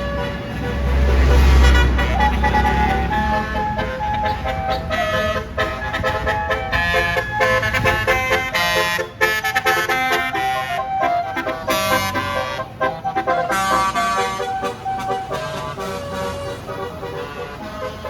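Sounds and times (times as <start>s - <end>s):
bus air horn tune: 0.0s - 18.0s.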